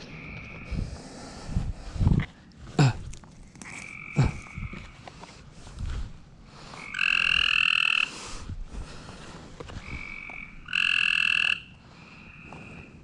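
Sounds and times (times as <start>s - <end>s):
frogs trilling: 0.0s - 0.8s, 3.6s - 5.0s, 6.8s - 8.1s, 9.8s - 13.0s.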